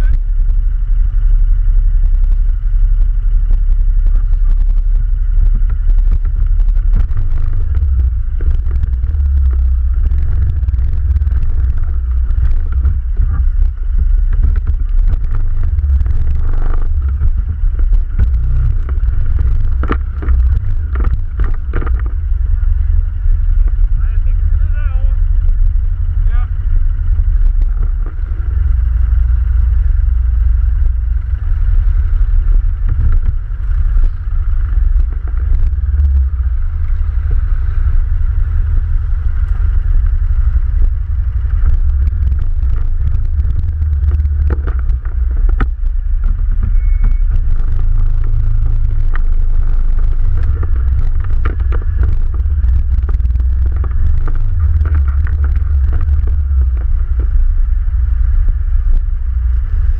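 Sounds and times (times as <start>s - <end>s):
atv engine running: 0.0s - 59.9s
knocks and rattles: 41.4s - 57.4s.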